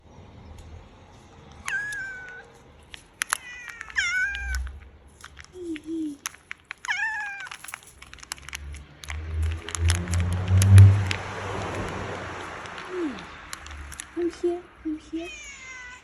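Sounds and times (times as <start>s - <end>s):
sharp clicks: 1.5s - 14.4s
cat meowing: 1.6s - 2.6s, 3.4s - 4.7s, 6.8s - 7.5s, 15.1s - 16.0s.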